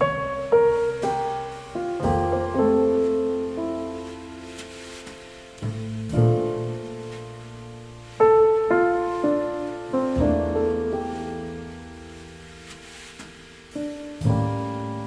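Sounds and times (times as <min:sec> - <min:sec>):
solo piano chords: 0:00.0 - 0:15.0.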